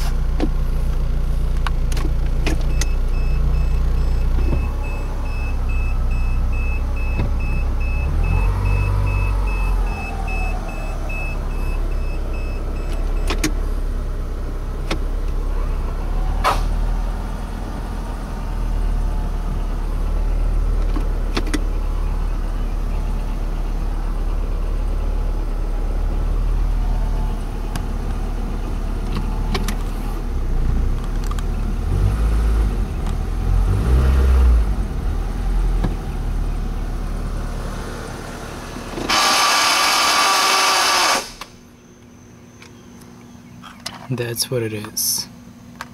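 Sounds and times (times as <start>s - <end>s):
car engine rumbling: 0.0s - 45.9s
electronic beeping: 2.7s - 13.4s.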